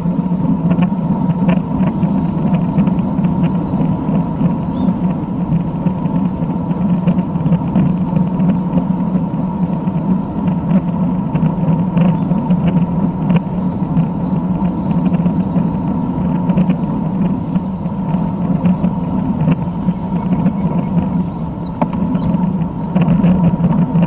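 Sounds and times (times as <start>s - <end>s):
faint ticks: 16.1s - 22.3s.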